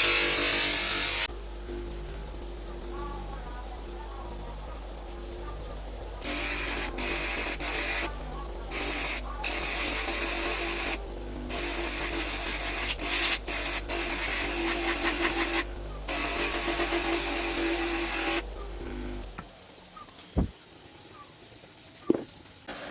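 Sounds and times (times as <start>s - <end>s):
grinding steel: 0.0s - 1.3s, 6.2s - 19.3s.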